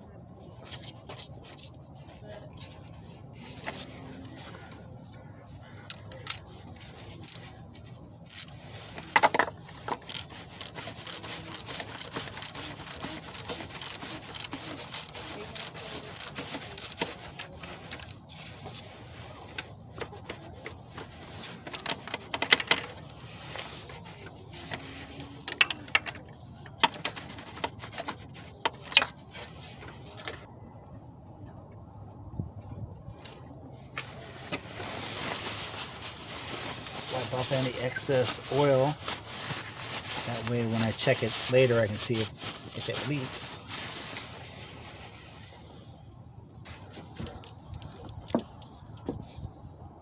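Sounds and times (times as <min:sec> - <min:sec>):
metal tools clinking: 0:08.3 - 0:17.0, 0:28.8 - 0:29.2.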